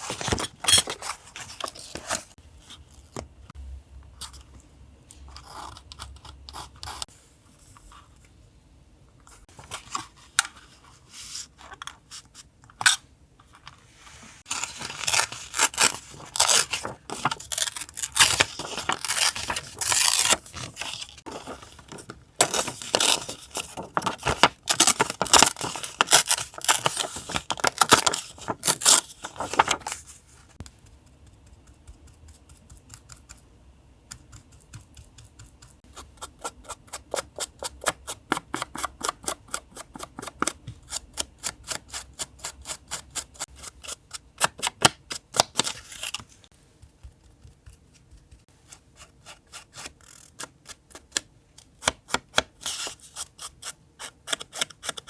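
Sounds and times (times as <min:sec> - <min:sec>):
paper rustling: 0:00.0 - 0:02.4, 0:13.8 - 0:31.0
paper tearing and crinkling: 0:14.5 - 0:30.2.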